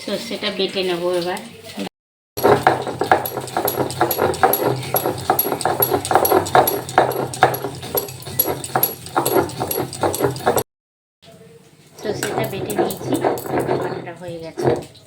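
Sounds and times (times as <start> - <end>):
rhythmic grinding strokes: 2.4 - 10.7, 12.0 - 14.9.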